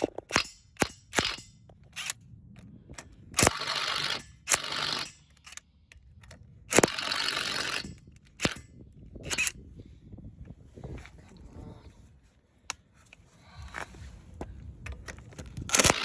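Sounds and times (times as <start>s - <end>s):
impact gun hammering: 0.0s - 1.5s.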